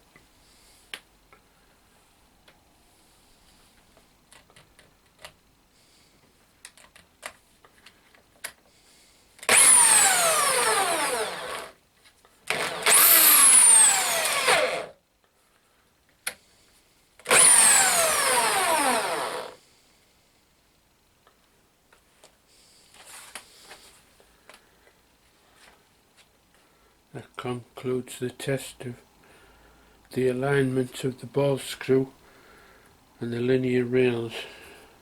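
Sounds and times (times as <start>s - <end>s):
drill whining: 9.4s - 11.8s, 12.5s - 15.0s, 17.3s - 19.6s.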